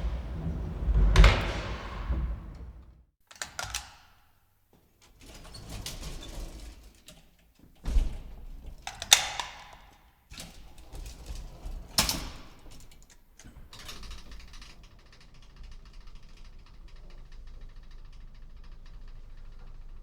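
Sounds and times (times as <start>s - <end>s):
elevator door thud: 0.0s - 3.0s.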